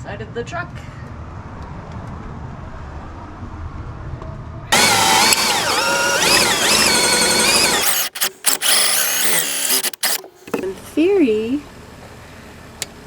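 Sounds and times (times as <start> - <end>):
cordless drill motor whine: 4.7 - 10.2
sharp clicks: 4.8 - 10.3.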